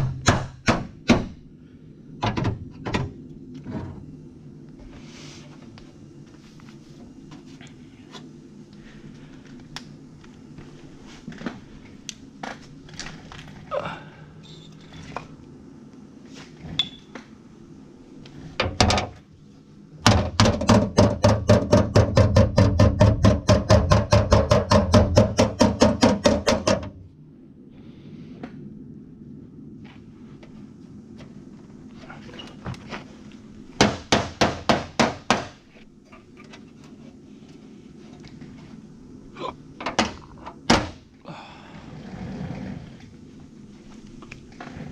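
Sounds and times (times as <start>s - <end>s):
hammering on sheet metal: 0.0s - 1.4s, 20.0s - 26.9s, 33.8s - 35.6s
steady low hum: 0.0s - 44.9s.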